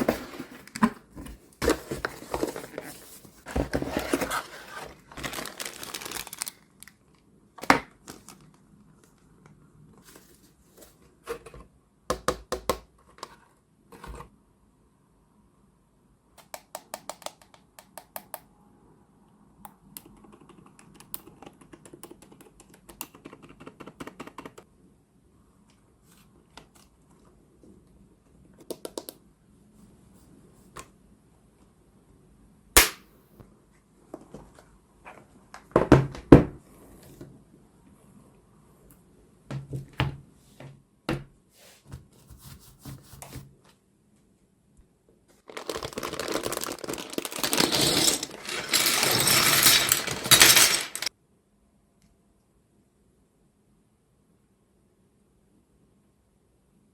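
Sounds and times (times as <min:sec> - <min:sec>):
packaging rustling: 0:00.0 - 0:07.0, 0:45.4 - 0:51.1.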